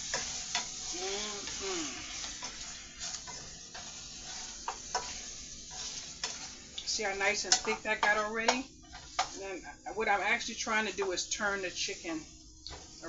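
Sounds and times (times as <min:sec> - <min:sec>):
sauce sizzling in a pot: 0:00.0 - 0:13.0
person humming: 0:00.9 - 0:02.3.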